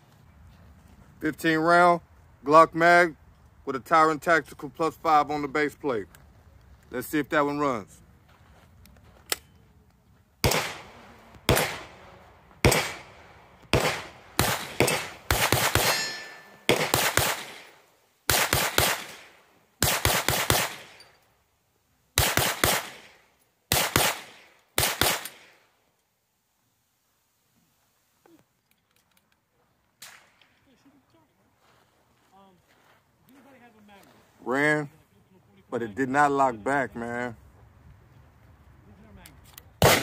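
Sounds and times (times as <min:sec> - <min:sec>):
pistol shots with ringing echo: 0:10.4 - 0:21.2, 0:22.2 - 0:25.6, 0:39.8 - 0:40.0.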